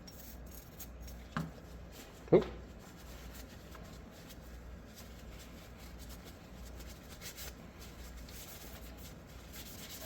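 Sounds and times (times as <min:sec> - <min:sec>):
low steady hum: 0:00.0 - 0:10.0
cloth rubbing on metal: 0:01.6 - 0:10.0.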